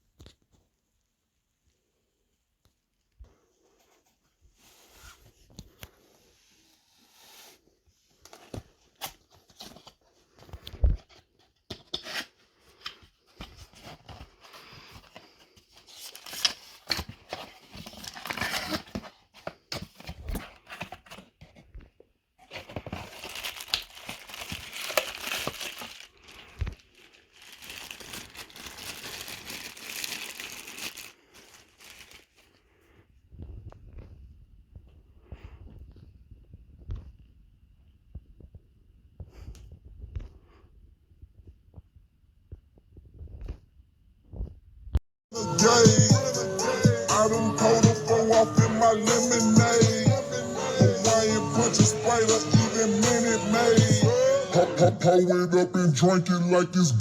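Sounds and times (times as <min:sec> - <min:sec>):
wrapping crinkling and tearing: 0:13.8 - 0:21.0, 0:22.4 - 0:32.6.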